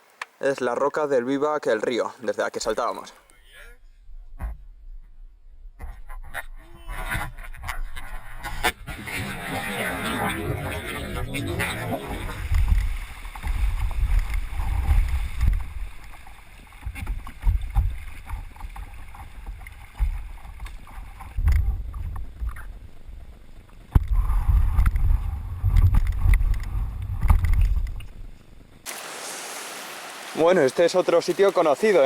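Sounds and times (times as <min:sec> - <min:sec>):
wind rumbling on microphone: 0:19.2 - 0:30.3
paddle strokes and splashing: 0:28.9 - 0:32.0.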